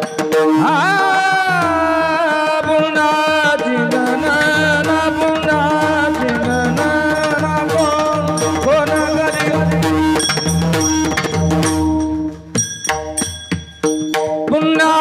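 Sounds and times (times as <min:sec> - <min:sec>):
held melodic tones: 0:00.0 - 0:14.9
mridang drumming: 0:00.0 - 0:15.0
high ringing tones: 0:04.2 - 0:14.4.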